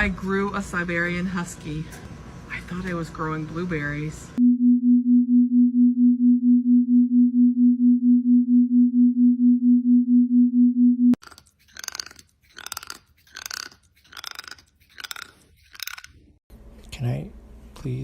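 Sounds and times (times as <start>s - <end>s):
pulsing low electronic tone: 4.4s - 11.2s.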